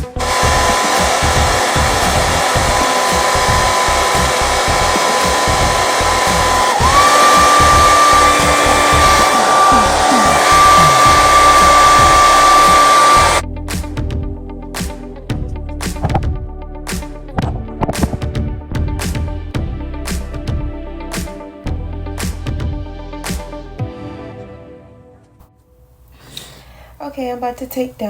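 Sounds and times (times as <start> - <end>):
hair dryer running: 0.0 - 13.4, 17.4 - 18.2
background music: 0.0 - 25.6.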